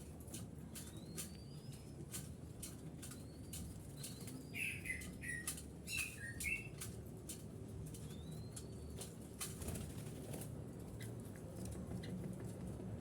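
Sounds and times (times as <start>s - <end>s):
birds chirping: 3.1s - 6.7s.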